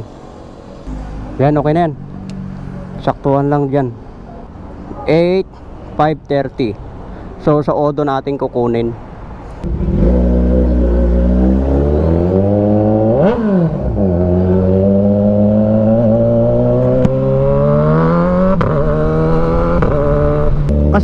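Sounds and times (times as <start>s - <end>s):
motorcycle engine accelerating: 9.6s - 21.0s.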